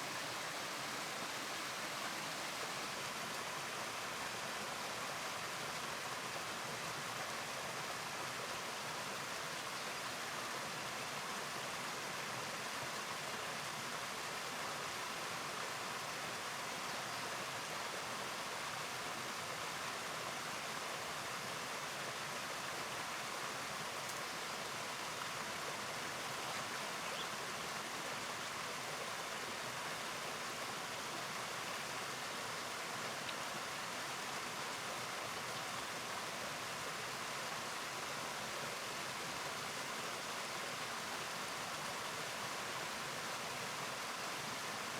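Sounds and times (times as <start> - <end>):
river water rushing: 0.0 - 8.9, 18.4 - 44.9.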